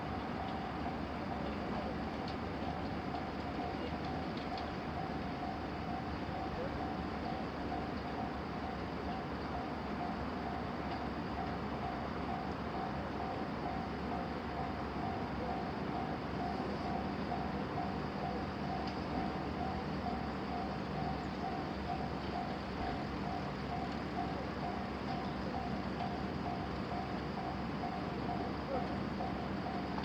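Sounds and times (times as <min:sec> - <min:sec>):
continuous rushing noise: 0:00.0 - 0:30.0
railroad crossing alarm ringing: 0:00.0 - 0:30.0.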